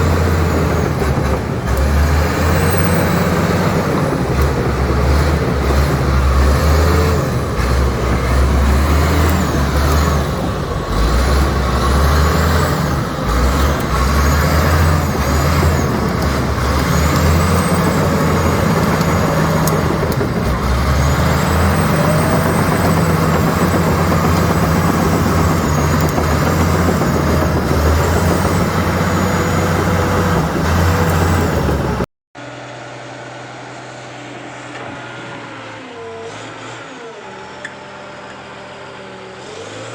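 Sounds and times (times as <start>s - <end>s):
bulldozer diesel engine running: 0.0s - 32.1s.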